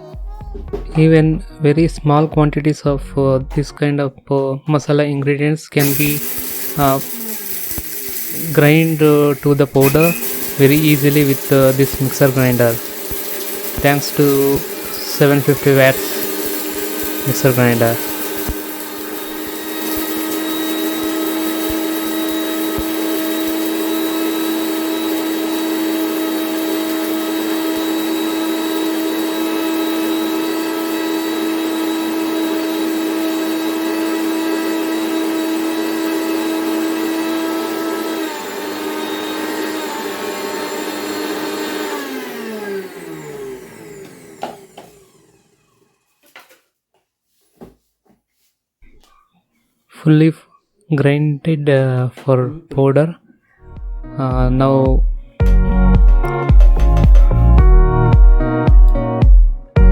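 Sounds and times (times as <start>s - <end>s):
mixer grinder motor whine: 5.8s - 46.1s.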